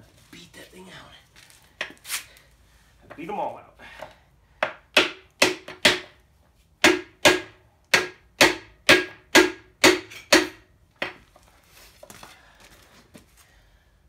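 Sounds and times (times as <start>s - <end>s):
hammer striking metal: 6.8s - 11.2s.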